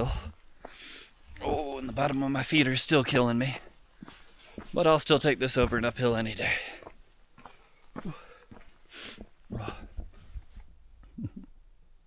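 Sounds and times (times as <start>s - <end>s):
person breathing: 0.0s - 1.4s, 6.4s - 10.6s
footsteps on rocky trail: 0.0s - 11.2s
person grunting: 9.5s - 9.9s.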